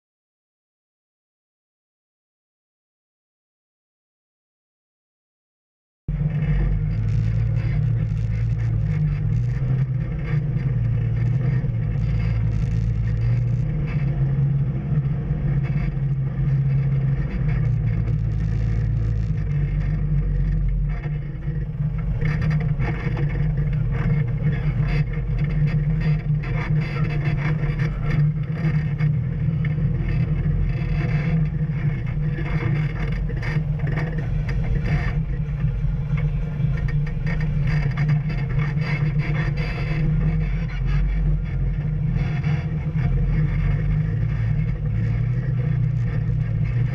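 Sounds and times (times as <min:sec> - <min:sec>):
off-road vehicle engine running: 0:06.1 - 0:46.9.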